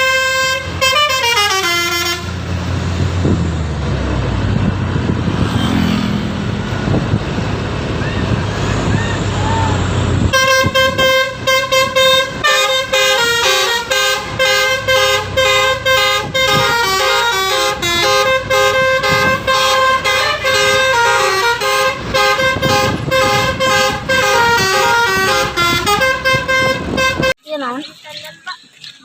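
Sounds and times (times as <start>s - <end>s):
bus horn playing a melody: 0.0s - 2.6s, 10.2s - 27.4s.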